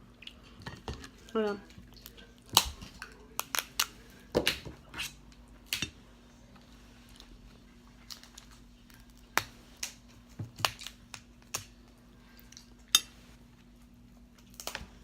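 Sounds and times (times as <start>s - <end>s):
crab shell cracking: 2.0s - 4.6s, 14.4s - 14.9s.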